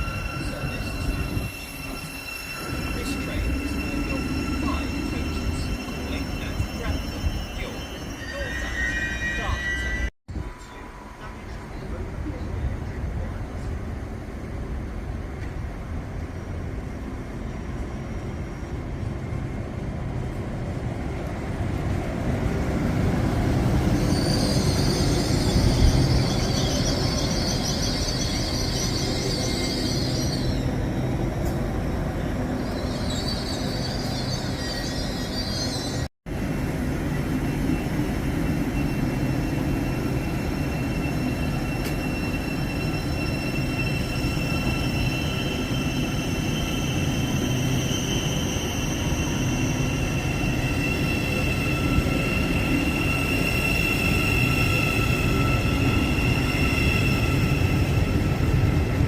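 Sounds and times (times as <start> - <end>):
high-pitched squeal: 0.0 - 11.3, 23.5 - 31.4, 32.4 - 36.1, 38.5 - 59.0
train rumbling: 0.0 - 59.0.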